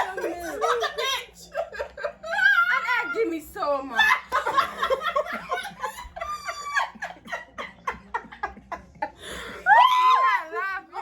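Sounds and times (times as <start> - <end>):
people laughing: 0.0 - 11.0.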